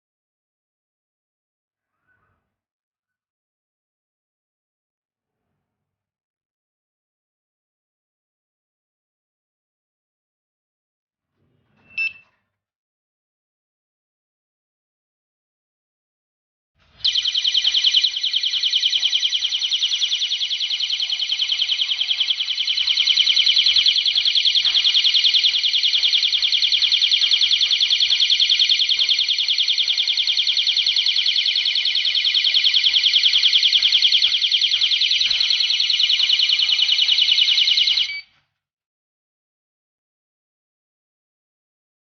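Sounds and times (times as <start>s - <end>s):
alarm siren warbling: 17.0s - 38.2s.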